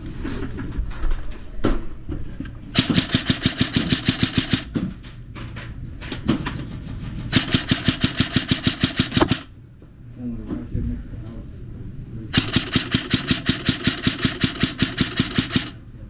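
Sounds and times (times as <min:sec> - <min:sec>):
airsoft gun single shots: 0:02.8 - 0:04.7, 0:07.4 - 0:09.5, 0:12.4 - 0:15.8
airsoft gun full-auto bursts: 0:02.8 - 0:04.8, 0:07.3 - 0:09.5, 0:12.4 - 0:15.8.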